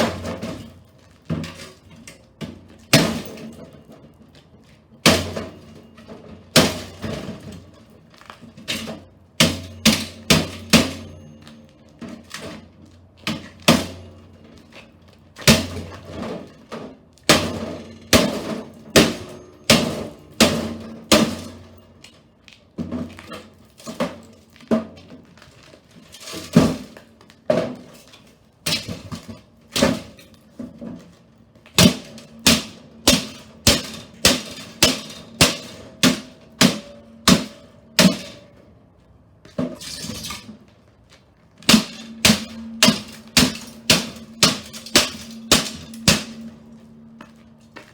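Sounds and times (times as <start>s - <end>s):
heavy blows on metal: 17.3s - 21.7s, 31.8s - 38.5s, 41.7s - 47.2s.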